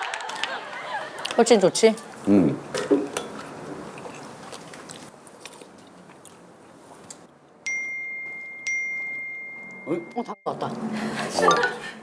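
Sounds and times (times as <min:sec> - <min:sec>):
faint chewing: 0:03.1 - 0:07.3
high ringing ding: 0:07.6 - 0:10.3.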